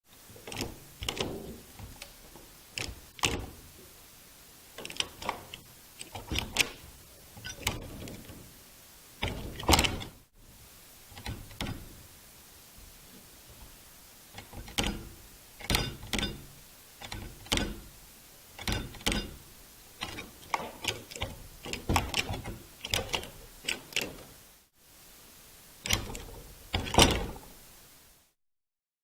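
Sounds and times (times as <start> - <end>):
door handle and lock rattling: 2.8 - 3.6, 14.4 - 17.9.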